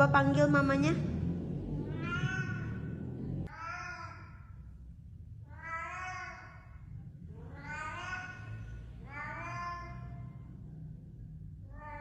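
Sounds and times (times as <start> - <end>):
cat meowing: 1.9 - 2.9.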